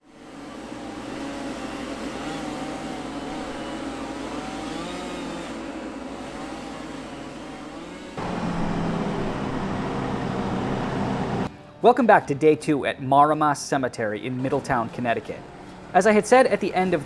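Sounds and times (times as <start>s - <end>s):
engine running: 0.1s - 11.5s.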